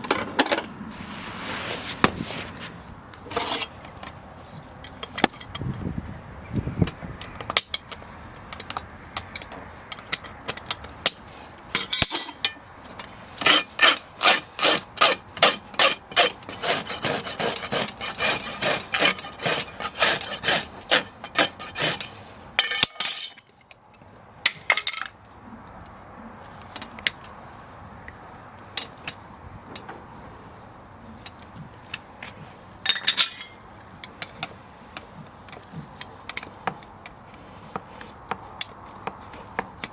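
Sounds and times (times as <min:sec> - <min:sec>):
rasp filing hoof: 0:13.4 - 0:22.2.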